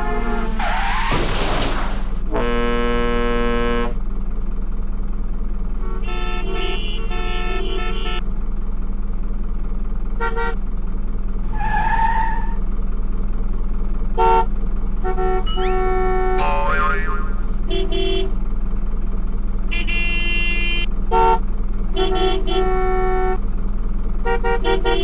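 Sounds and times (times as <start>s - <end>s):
toy car horn tooting: 0.0s - 0.6s, 2.3s - 4.0s, 5.8s - 8.2s, 14.2s - 18.3s, 19.7s - 21.4s, 22.0s - 23.4s, 24.2s - 25.0s
steady low hum: 1.7s - 11.6s, 12.6s - 20.2s.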